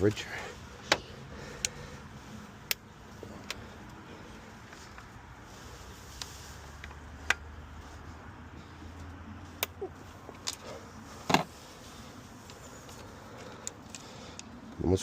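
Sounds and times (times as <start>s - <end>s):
hand tools clicking on engine: 0.0s - 5.2s, 6.2s - 7.5s, 8.9s - 11.5s, 12.2s - 15.0s.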